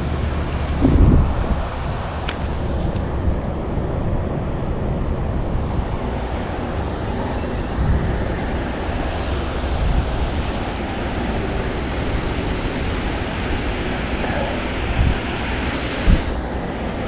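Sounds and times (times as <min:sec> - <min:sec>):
deep rumble: 0:00.0 - 0:16.5
wind: 0:00.0 - 0:17.0
flowing water: 0:05.2 - 0:17.0.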